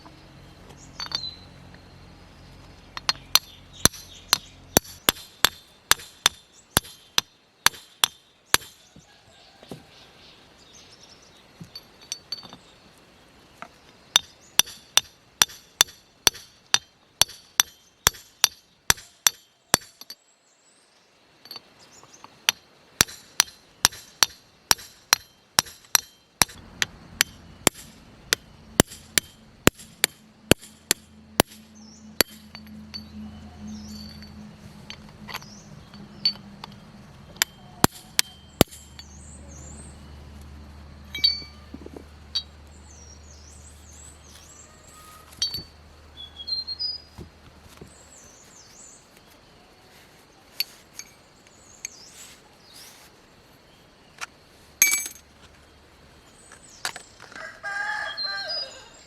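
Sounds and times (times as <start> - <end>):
hammer striking metal: 23.0 - 39.3, 41.1 - 41.6.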